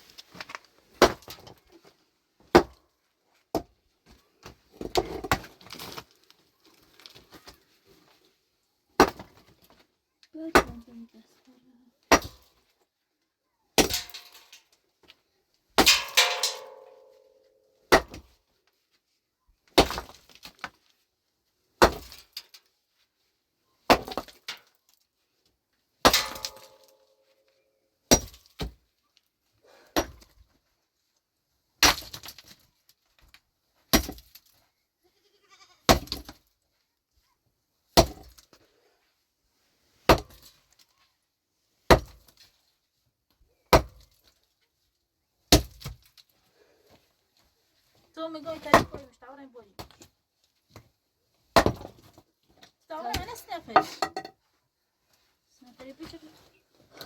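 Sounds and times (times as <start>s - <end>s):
pickaxe striking rock: 1.0s - 1.4s, 2.5s - 2.8s, 12.1s - 12.4s, 13.8s - 14.1s, 17.9s - 18.3s, 21.8s - 22.2s, 23.9s - 24.4s, 26.0s - 26.9s, 28.1s - 28.8s, 30.0s - 30.3s, 31.8s - 32.4s, 33.9s - 34.3s, 35.9s - 36.4s, 38.0s - 38.3s, 40.1s - 40.4s, 41.9s - 42.2s, 43.7s - 44.1s, 45.5s - 46.0s, 51.6s - 52.0s.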